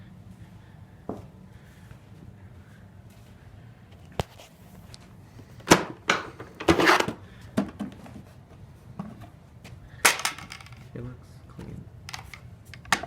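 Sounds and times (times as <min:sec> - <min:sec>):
plastic vacuum parts clicking: 0:12.1 - 0:13.0.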